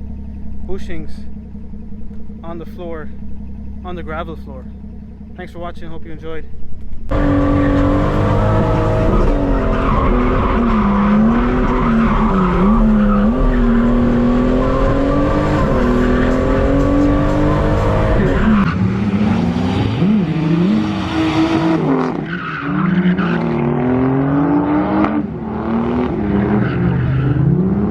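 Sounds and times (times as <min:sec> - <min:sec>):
tyres skidding: 0:00.0 - 0:27.9
car engine revving hard: 0:07.1 - 0:27.9.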